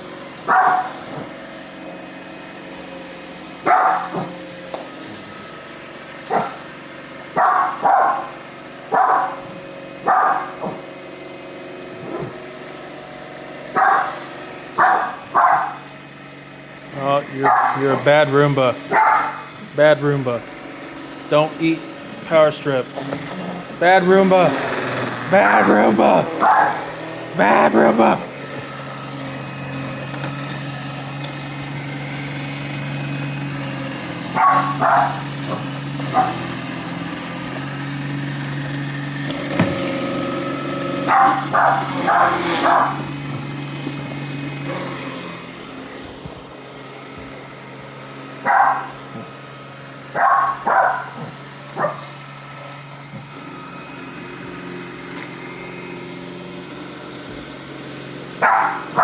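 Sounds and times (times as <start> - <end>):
robot vacuum humming: 0.0 - 59.0
dog barking: 0.5 - 1.3, 3.6 - 4.3, 6.3 - 6.6, 7.4 - 8.3, 8.9 - 10.8, 13.7 - 14.2, 14.8 - 15.8, 17.4 - 17.9, 18.9 - 19.5, 26.4 - 26.8, 34.4 - 36.4, 41.1 - 43.0, 48.4 - 49.0, 50.2 - 52.0, 58.4 - 59.0.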